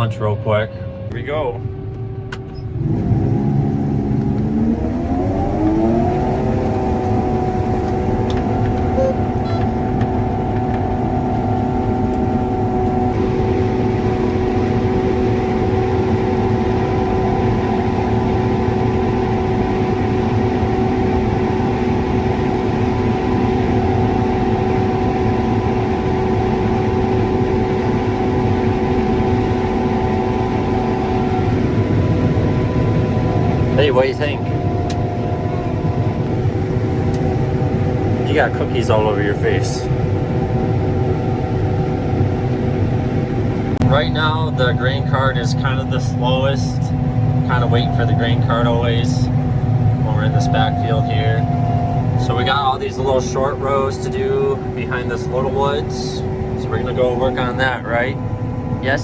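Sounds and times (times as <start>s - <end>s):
combine engine throttling up: 1.7s - 59.0s.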